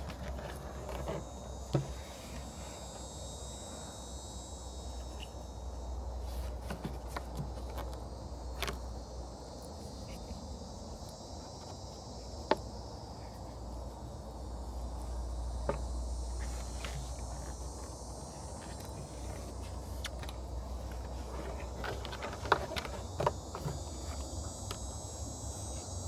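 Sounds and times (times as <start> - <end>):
insects chirring: 0.0 - 26.0.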